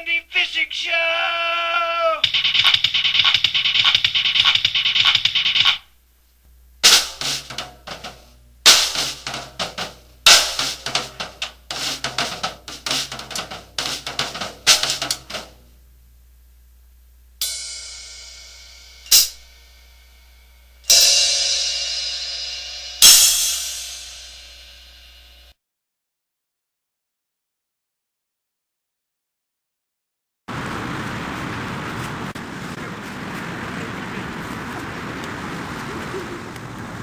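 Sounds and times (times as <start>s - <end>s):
hi-hat and snare hits: 2.2s - 5.9s, 6.8s - 15.6s, 17.4s - 25.5s
cymbal crashes: 6.8s - 15.6s, 17.4s - 25.6s.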